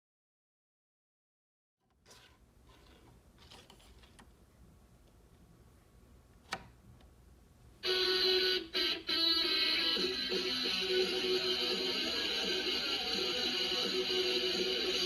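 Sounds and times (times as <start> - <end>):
toy computer electronic music: 7.8 - 15.0.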